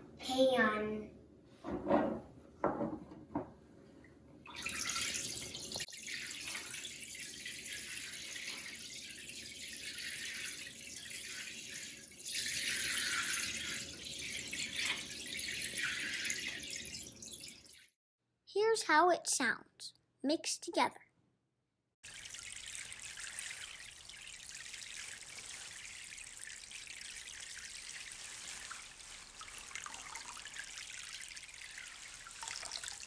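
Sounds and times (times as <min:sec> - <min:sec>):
water pouring into a pan: 0:04.5 - 0:17.9, 0:22.0 - 0:33.0.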